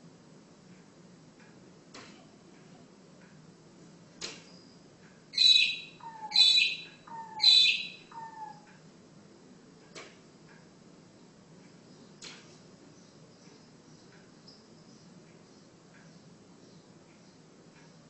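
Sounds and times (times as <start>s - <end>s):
bird calling harshly: 5.4s - 8.7s.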